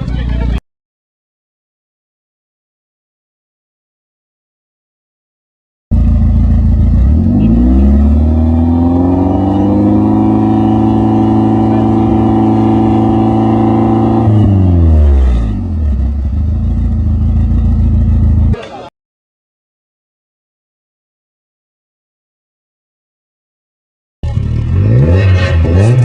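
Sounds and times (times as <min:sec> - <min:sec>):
car engine revving through exhaust: 0:05.9 - 0:18.6, 0:24.2 - 0:26.0.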